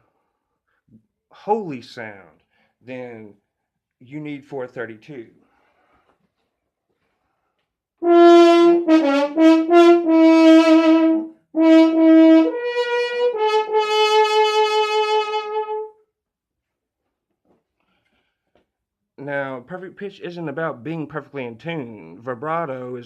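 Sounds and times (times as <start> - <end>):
brass horn solo: 8.0 - 16.0.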